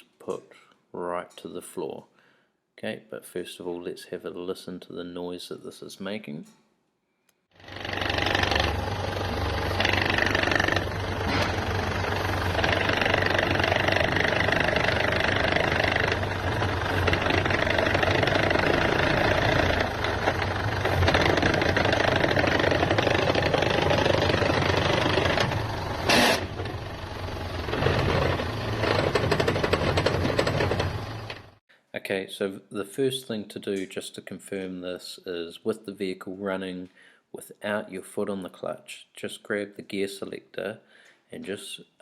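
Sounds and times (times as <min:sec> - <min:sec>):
engine running: 0:07.6 - 0:31.6
gearbox knocking rattle: 0:07.7 - 0:26.6, 0:27.6 - 0:31.6.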